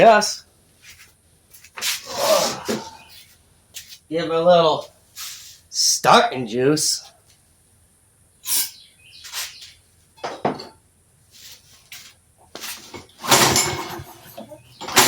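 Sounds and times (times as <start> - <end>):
handling clicks and clunks: 12.5 - 15.0.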